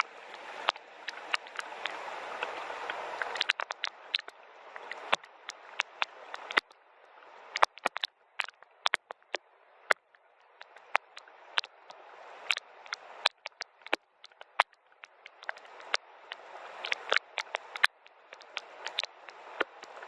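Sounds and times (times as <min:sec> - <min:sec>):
hiss of rainfall: 0:00.0 - 0:07.7, 0:10.8 - 0:13.3, 0:15.4 - 0:20.0
raindrops tapping: 0:00.0 - 0:20.0.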